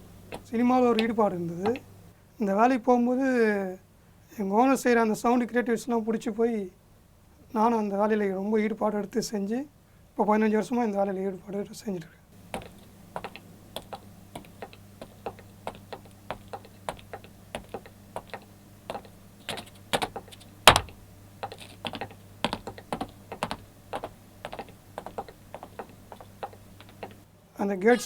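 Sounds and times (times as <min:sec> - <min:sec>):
light taps and clicks: 0:00.3 - 0:02.0, 0:12.4 - 0:27.2
loud knock: 0:20.7 - 0:21.0.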